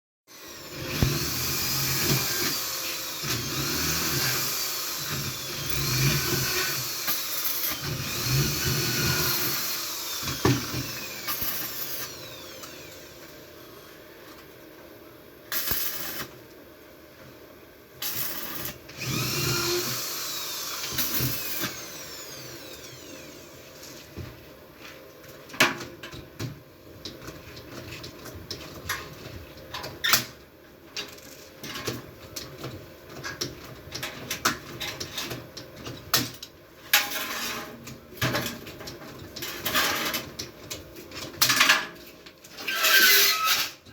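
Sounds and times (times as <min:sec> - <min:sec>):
power tool whirring: 0:00.3 - 0:14.0, 0:18.0 - 0:23.8.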